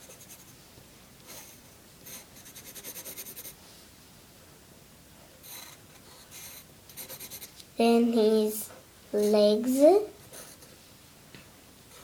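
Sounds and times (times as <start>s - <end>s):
drawing tool scratching paper: 5.5s - 7.5s.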